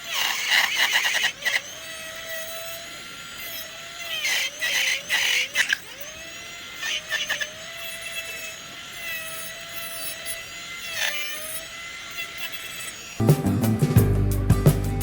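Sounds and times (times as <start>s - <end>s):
rotary tool whining: 0.0s - 13.2s
bur scraping acrylic: 0.0s - 13.8s
loud music: 13.2s - 15.0s.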